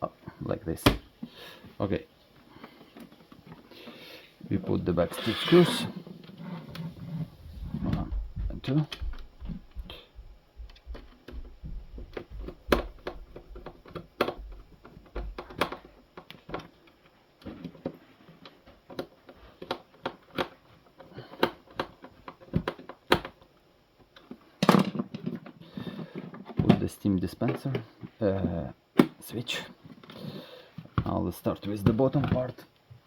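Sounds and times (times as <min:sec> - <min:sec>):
plastic parts clicking and tapping: 0:10.6 - 0:30.2, 0:30.8 - 0:32.9.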